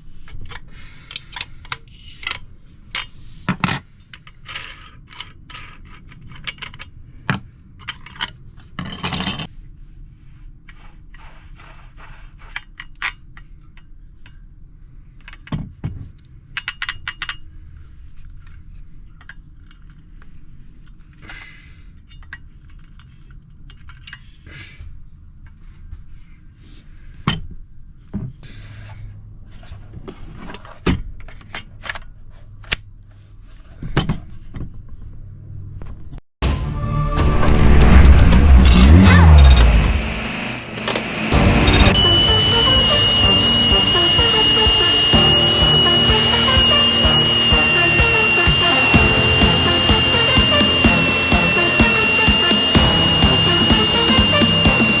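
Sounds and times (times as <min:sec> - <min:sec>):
steady low hum: 0:37.4 - 0:55.0.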